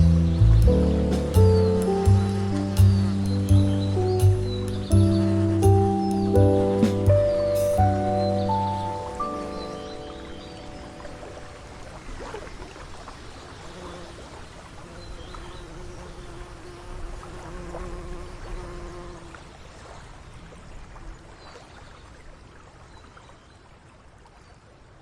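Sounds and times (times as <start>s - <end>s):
water flowing and trickling: 0.0s - 15.5s.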